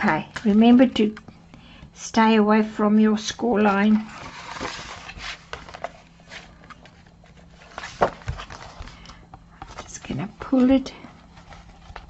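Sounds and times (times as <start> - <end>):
paper rustling: 3.6 - 12.0.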